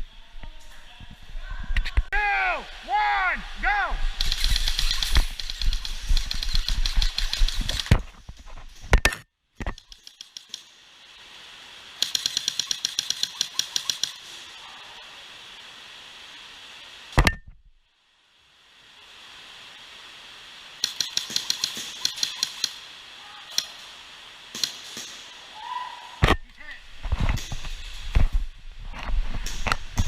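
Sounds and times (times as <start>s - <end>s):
airsoft pistols firing rapidly: 4.2s - 8.0s, 12.0s - 14.3s, 20.8s - 22.8s.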